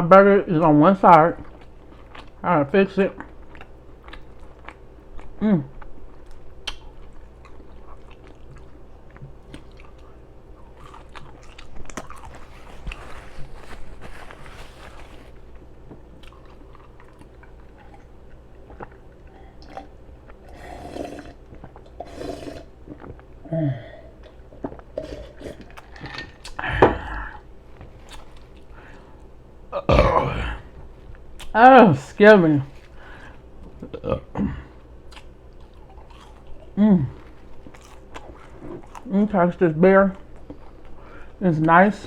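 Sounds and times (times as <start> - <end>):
wet chewing and lip-smacking: 1.4 - 2.4, 3.1 - 20.5, 21.3 - 22.0, 27.8 - 28.9, 35.0 - 39.1.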